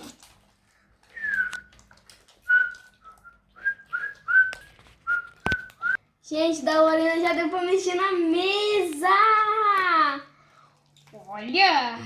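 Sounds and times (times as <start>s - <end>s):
person whistling short notes: 1.1s - 1.7s, 2.5s - 6.0s.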